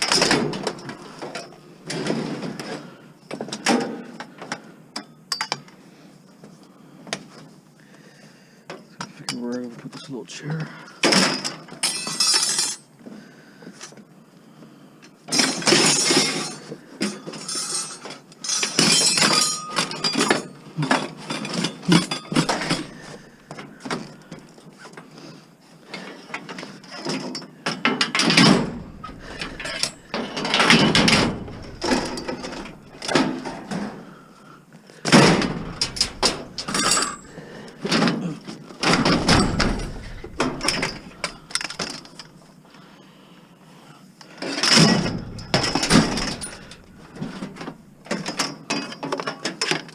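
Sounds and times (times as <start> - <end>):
scrap metal knocks and clatter: 0.0 - 4.4, 15.3 - 24.4, 26.0 - 34.0, 35.1 - 38.2, 38.8 - 42.3, 44.4 - 49.8
heavy thuds: 22.4 - 23.3, 28.4 - 33.6, 35.1 - 37.9, 38.8 - 42.0, 44.9 - 47.9.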